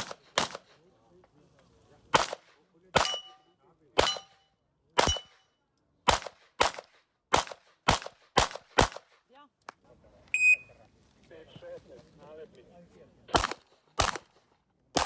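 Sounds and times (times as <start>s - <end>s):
handgun shots: 2.2s - 2.4s, 3.0s - 3.4s, 5.0s - 5.4s, 6.1s - 9.0s, 13.4s - 14.3s
metallic ring of steel targets: 3.0s - 4.4s.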